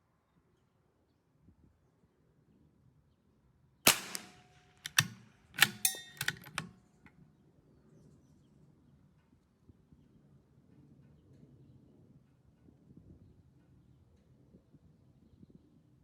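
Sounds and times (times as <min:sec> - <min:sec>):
rifle bolt clicks: 0:03.9 - 0:06.7
rifle shot: 0:03.9 - 0:06.7.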